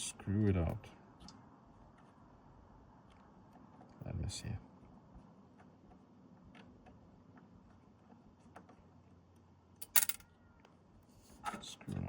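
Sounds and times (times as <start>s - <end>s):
metallic clatter: 9.8s - 10.3s.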